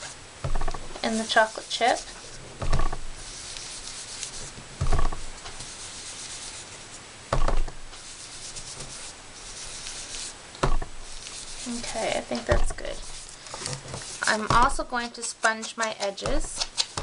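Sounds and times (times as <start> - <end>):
sponge rubbing on cardstock: 1.0 - 2.4, 3.2 - 7.0, 8.0 - 10.4, 11.0 - 16.8
sponge thumps: 2.4 - 3.1, 4.5 - 5.8, 7.3 - 7.8, 10.6 - 13.1, 13.7 - 17.0.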